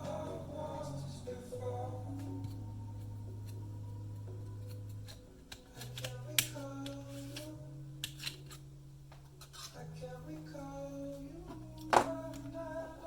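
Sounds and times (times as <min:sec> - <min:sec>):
music with slow held chords: 0:00.0 - 0:13.0
laptop parts clicking: 0:04.6 - 0:08.6.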